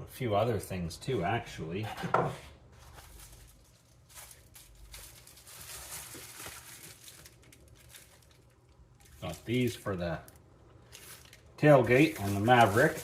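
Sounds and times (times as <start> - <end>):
packaging rustling: 2.8 - 13.0.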